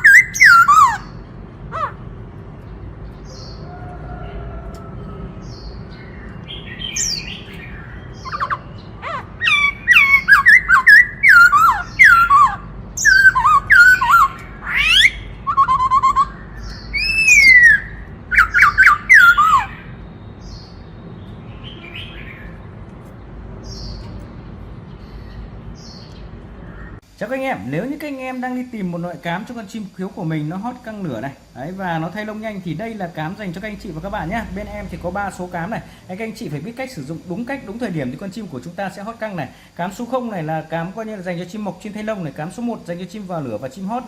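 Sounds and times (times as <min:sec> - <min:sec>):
bird singing whistled notes: 0:00.0 - 0:01.2, 0:05.4 - 0:22.6
faint bird calls: 0:00.0 - 0:02.0, 0:03.1 - 0:20.9.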